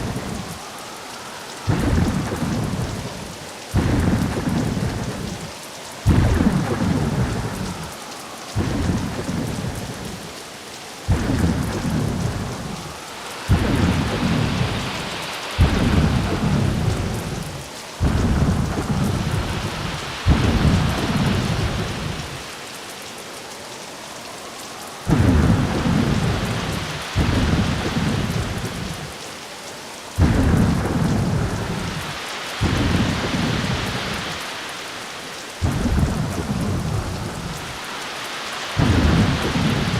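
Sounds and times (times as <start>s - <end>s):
hiss of rain: 0.0s - 39.9s
low rumble: 15.6s - 22.3s.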